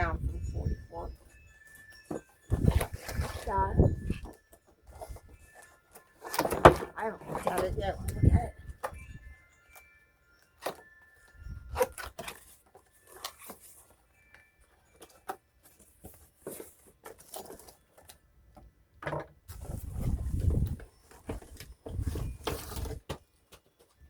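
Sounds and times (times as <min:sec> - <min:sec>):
wind buffeting microphone: 0:00.0 - 0:01.3, 0:02.5 - 0:04.3, 0:07.6 - 0:09.3, 0:19.6 - 0:22.9
cardboard and plastic rustling: 0:00.0 - 0:24.0.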